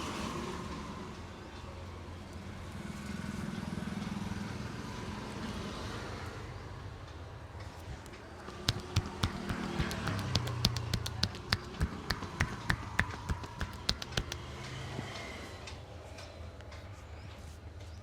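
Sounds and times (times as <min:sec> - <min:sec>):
hand slaps and taps on head: 0:08.5 - 0:14.4.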